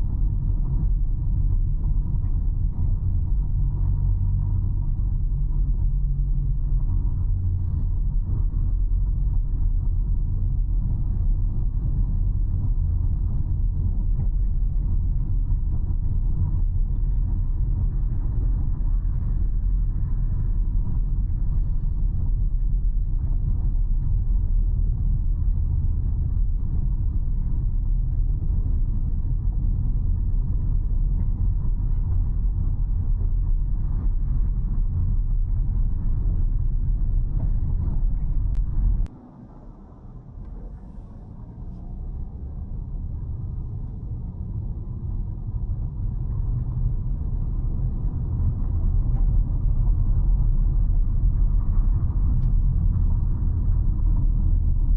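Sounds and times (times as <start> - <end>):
car engine and tyre rumble: 0.0 - 54.9.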